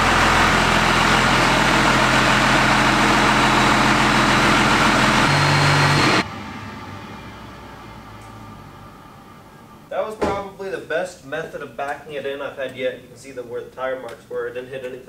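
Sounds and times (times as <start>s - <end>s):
diesel engine idling: 0.0s - 9.9s.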